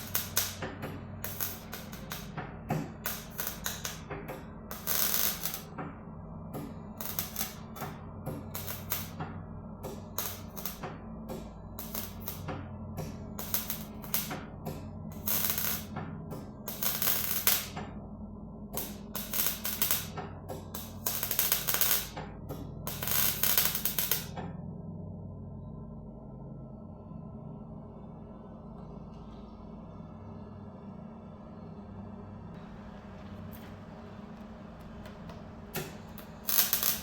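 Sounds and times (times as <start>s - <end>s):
welder crackling bursts: 0.0s - 0.6s, 1.2s - 4.1s, 4.7s - 5.7s, 7.0s - 9.2s, 10.1s - 10.9s, 11.8s - 12.5s, 13.4s - 14.4s, 15.1s - 15.9s, 16.7s - 17.8s, 18.8s - 20.2s, 20.8s - 22.2s, 22.9s - 24.3s, 34.8s - 37.0s.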